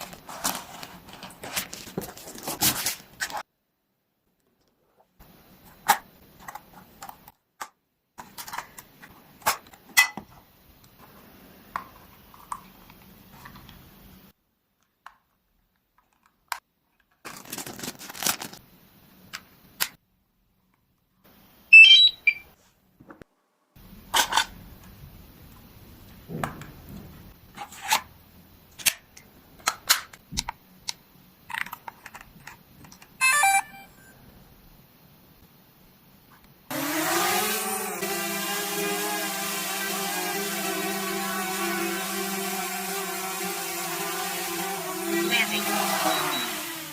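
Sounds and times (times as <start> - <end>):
packaging clicks and rustles: 17.0 - 18.6
high electronic beeps: 21.7 - 22.5, 46.0 - 46.6.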